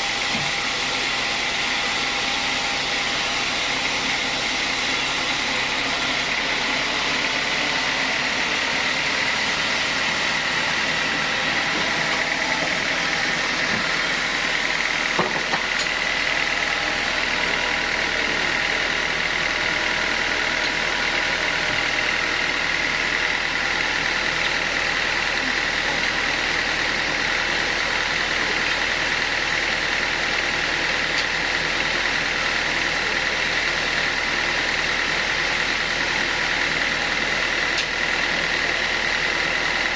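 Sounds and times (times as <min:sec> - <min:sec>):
sawmill saw whining: 0:00.0 - 0:39.9.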